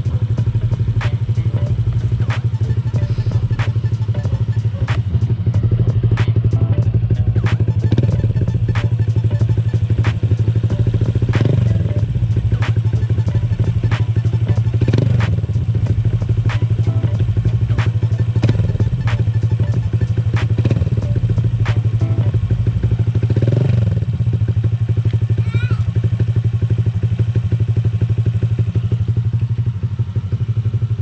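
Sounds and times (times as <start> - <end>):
throttle blips: 0.0 - 22.5
scooter engine idling: 0.0 - 23.1.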